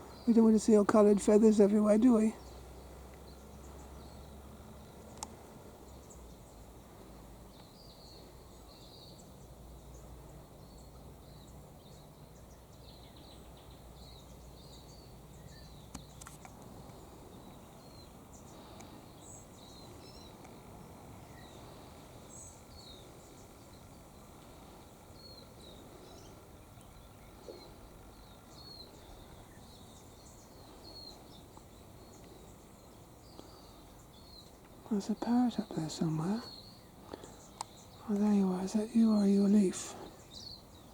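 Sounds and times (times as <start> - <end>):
low background noise: 0.0 - 40.9
small birds chirping: 0.0 - 40.9
soft clicks: 5.1 - 5.4.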